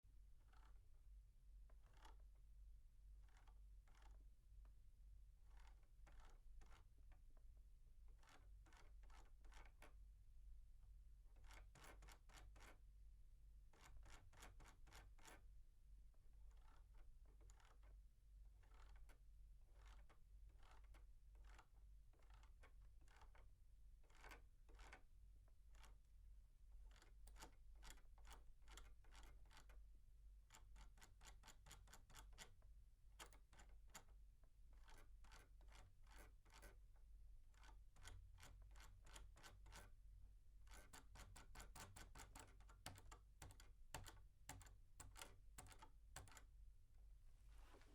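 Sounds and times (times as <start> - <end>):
mouse scroll wheel clicks: 1.8 - 2.2, 3.2 - 4.2, 5.5 - 6.8, 17.5 - 17.8, 40.7 - 46.5.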